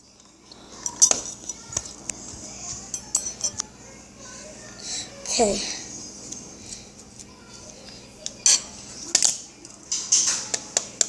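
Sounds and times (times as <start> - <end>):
utensils and dishes clinking: 0.0 - 2.1, 2.8 - 3.7, 6.7 - 11.0.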